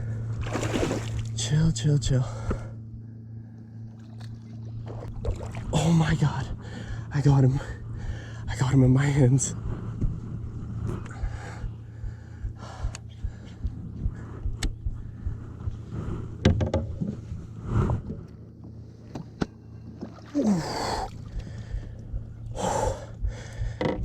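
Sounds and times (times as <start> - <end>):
knocks against a kayak: 16.4 - 17.2, 23.8 - 24.0
person groaning: 20.3 - 21.1
person gasping: 20.3 - 21.9, 22.6 - 23.8.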